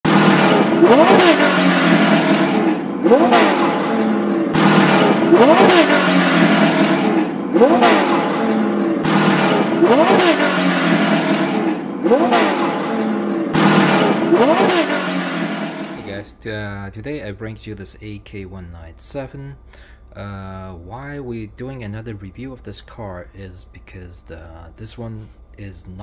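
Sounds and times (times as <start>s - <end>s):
vehicle motor revving: 0.0s - 16.2s.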